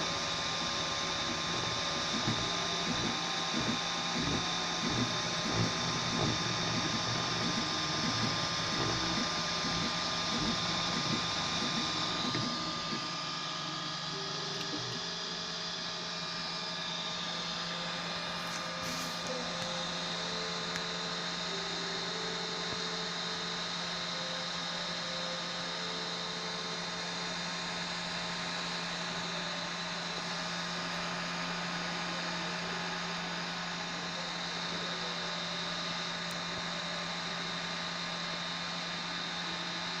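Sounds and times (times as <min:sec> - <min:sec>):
printer fan hum and hiss: 0:00.0 - 0:40.0
stepper motor tones: 0:00.0 - 0:40.0.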